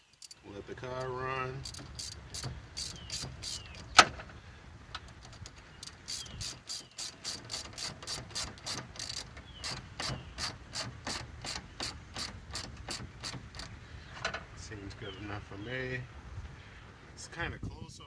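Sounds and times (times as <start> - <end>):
socket ratchet clicking: 1.0 - 4.2, 5.0 - 14.4.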